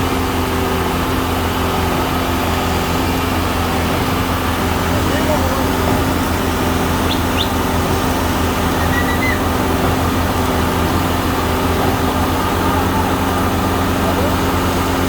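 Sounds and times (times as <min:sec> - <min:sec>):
engine droning: 0:00.0 - 0:15.0
faint high chirps: 0:08.8 - 0:09.5.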